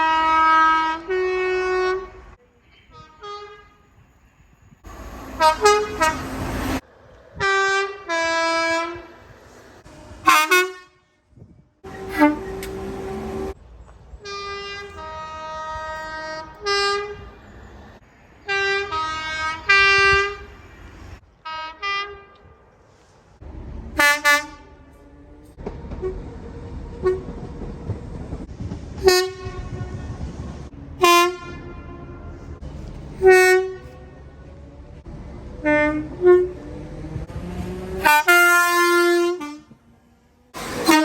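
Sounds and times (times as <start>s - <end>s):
train two-tone horn blasts: 0.0s - 4.1s, 5.0s - 6.8s, 7.4s - 9.3s, 10.1s - 13.6s, 14.2s - 17.4s, 18.4s - 20.7s, 21.4s - 22.6s, 24.0s - 26.3s, 27.0s - 27.3s, 29.0s - 30.3s, 31.0s - 32.6s, 33.2s - 34.2s, 35.6s - 36.8s, 37.8s - 39.8s, 40.6s - 41.0s
moving train rumble: 0.0s - 41.0s.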